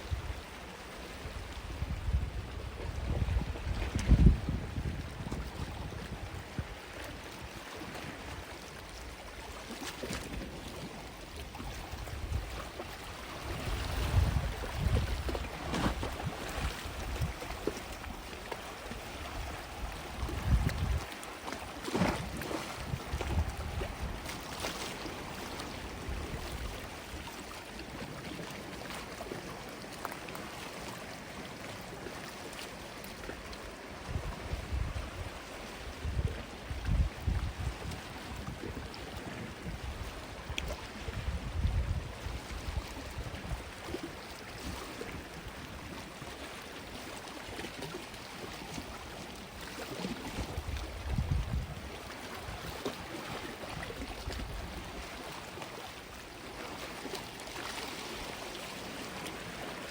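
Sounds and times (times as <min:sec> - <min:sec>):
sea waves washing on beach: 0:00.0 - 0:59.9
wind gusts on microphone: 0:01.2 - 0:06.9, 0:11.6 - 0:17.6, 0:19.2 - 0:21.1, 0:22.0 - 0:24.3, 0:34.0 - 0:44.0, 0:50.2 - 0:52.8.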